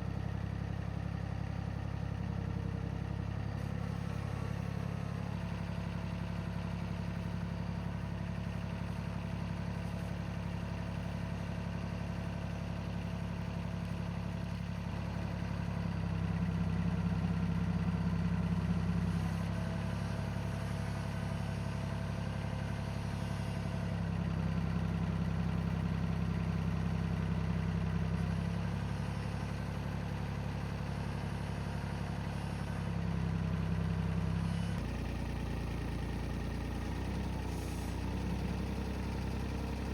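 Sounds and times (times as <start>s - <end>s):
engine idling and revving: 0.0s - 39.9s.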